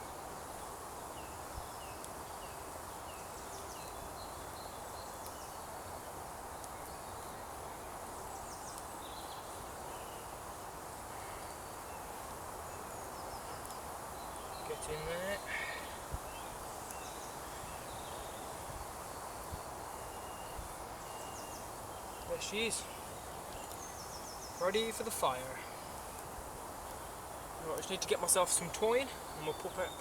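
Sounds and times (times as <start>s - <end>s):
woodland ambience hiss: 0.0s - 30.0s
faint light ticks: 1.9s - 2.2s, 3.2s - 4.2s, 5.0s - 5.5s, 6.5s - 7.0s, 8.6s - 9.3s, 13.5s - 14.6s, 16.1s - 17.2s, 23.5s - 24.0s.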